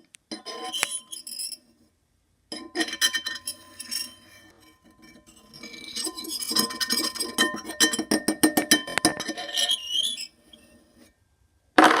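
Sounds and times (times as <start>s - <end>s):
hard objects clinking and tapping: 2.5s - 9.9s.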